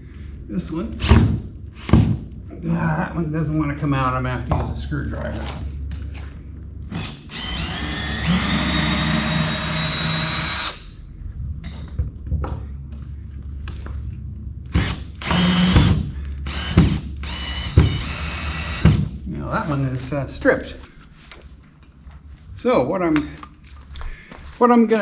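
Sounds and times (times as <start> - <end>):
drill whining: 1.8 - 2.1, 6.9 - 11.0, 14.7 - 19.1
drill clicks: 6.9 - 10.8, 14.8 - 19.0.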